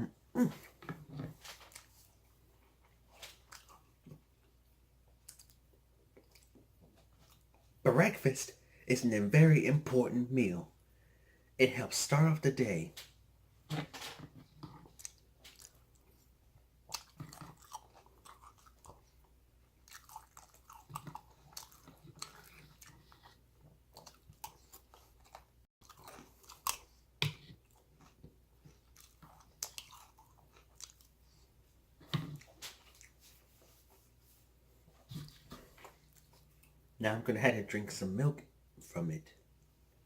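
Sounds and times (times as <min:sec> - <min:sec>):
crunching cereal chewing: 0:00.5 - 0:04.5, 0:05.1 - 0:07.7, 0:13.7 - 0:34.0.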